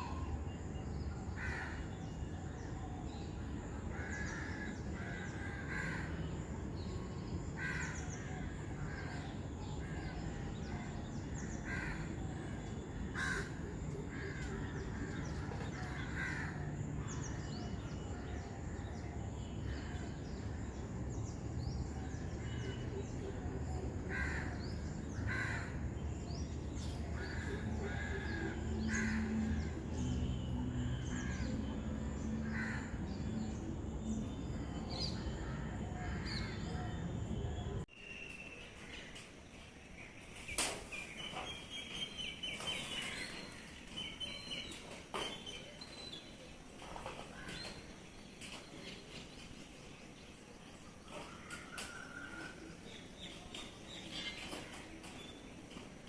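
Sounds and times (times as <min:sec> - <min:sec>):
birds harsh calls: 0:01.2 - 0:02.3, 0:07.6 - 0:37.8
low background rumble: 0:16.6 - 0:37.9.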